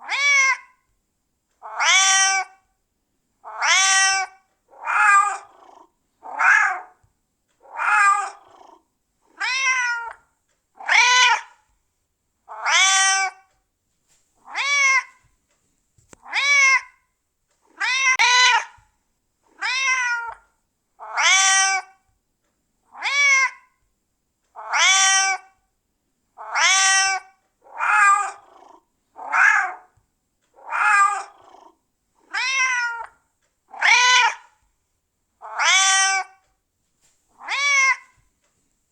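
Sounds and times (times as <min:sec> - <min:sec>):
cat meowing: 0:00.0 - 0:00.8, 0:01.6 - 0:02.6, 0:03.4 - 0:10.2, 0:10.8 - 0:11.6, 0:12.5 - 0:13.5, 0:14.5 - 0:15.2, 0:16.2 - 0:17.0, 0:17.7 - 0:18.8, 0:19.6 - 0:22.0, 0:22.9 - 0:23.8, 0:24.6 - 0:25.6, 0:26.4 - 0:30.0, 0:30.6 - 0:34.6, 0:35.4 - 0:36.4, 0:37.4 - 0:38.2.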